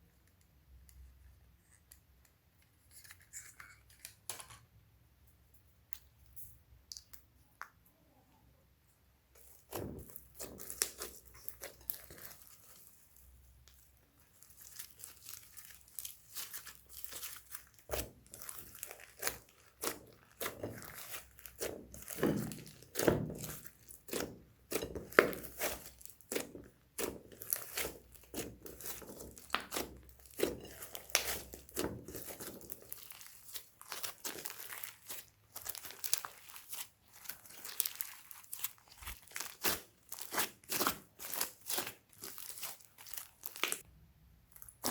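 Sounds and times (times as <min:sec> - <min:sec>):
slime squished by hand: 0:09.4 - 0:43.8, 0:44.5 - 0:44.9.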